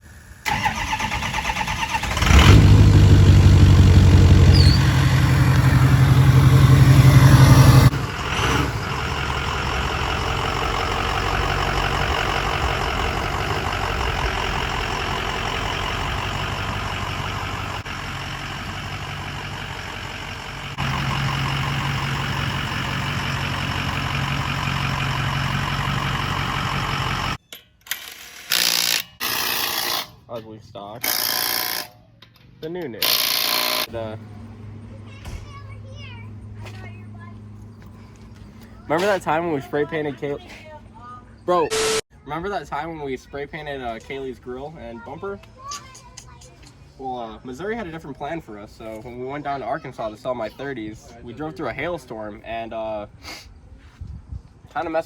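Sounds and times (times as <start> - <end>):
pickup truck engine revving: 0.4 - 27.4.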